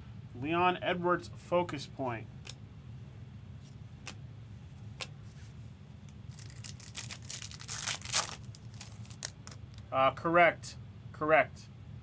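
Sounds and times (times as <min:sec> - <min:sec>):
cards crinkling and rustling: 0:04.8 - 0:09.9.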